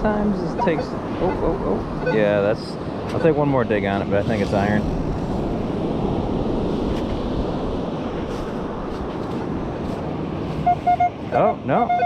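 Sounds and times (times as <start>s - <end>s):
wind on microphone: 0.0s - 12.0s
metal detector beep: 10.6s - 12.0s.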